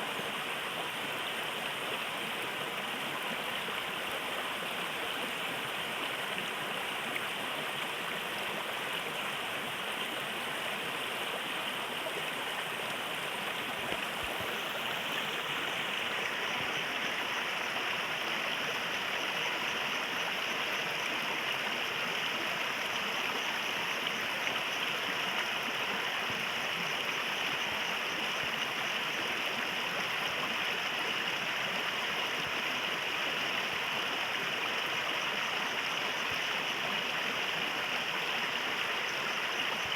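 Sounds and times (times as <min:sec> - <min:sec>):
stream water rushing and gurgling: 0:00.0 - 0:39.9.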